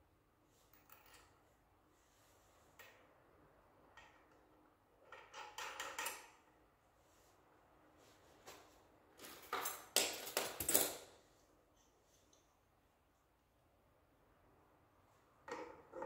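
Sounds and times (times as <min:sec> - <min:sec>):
objects clicking and clinking: 0:09.2 - 0:11.1.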